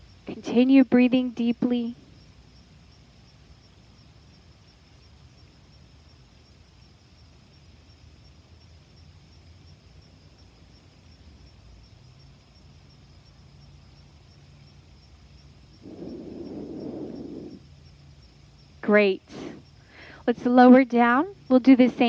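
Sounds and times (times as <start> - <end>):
insects trilling: 0.0 - 22.0
wind rumble: 15.8 - 17.6.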